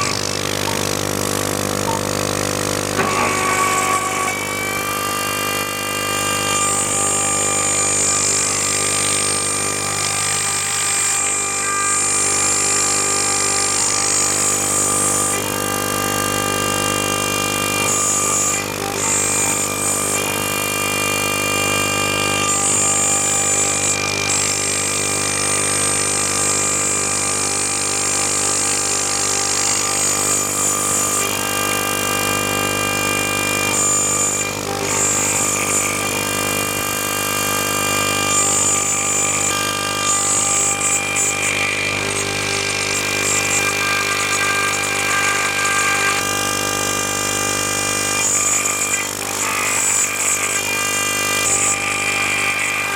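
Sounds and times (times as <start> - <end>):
cnc machine motors whining: 0.0 - 52.9.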